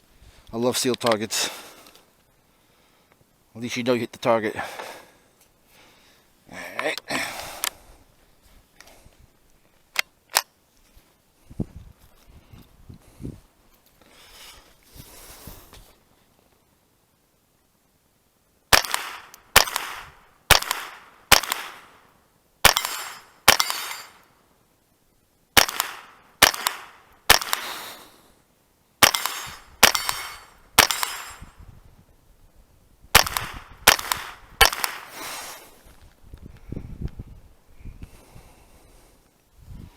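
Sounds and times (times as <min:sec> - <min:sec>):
rifle shots: 0:18.7 - 0:22.0, 0:22.6 - 0:24.3, 0:25.6 - 0:28.1, 0:29.0 - 0:31.6, 0:33.1 - 0:35.4
steel targets ringing: 0:22.7 - 0:24.2.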